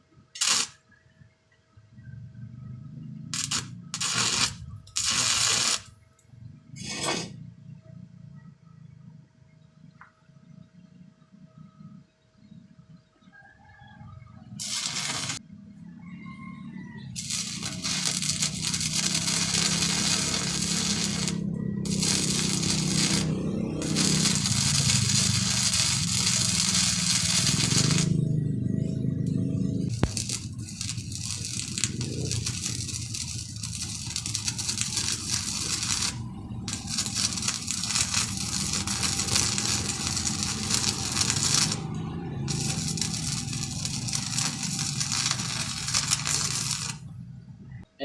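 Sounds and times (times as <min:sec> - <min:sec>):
welding arc crackling: 0:00.0 - 0:00.8, 0:03.3 - 0:06.0, 0:14.6 - 0:15.4, 0:17.1 - 0:47.1
low hum: 0:17.2 - 0:48.0.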